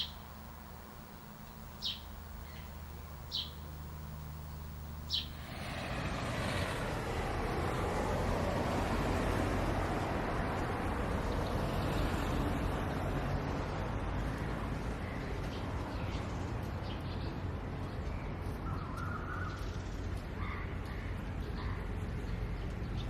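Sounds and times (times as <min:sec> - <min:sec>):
bird calls: 0:00.0 - 0:05.5
steady rumbling background noise: 0:00.0 - 0:05.8.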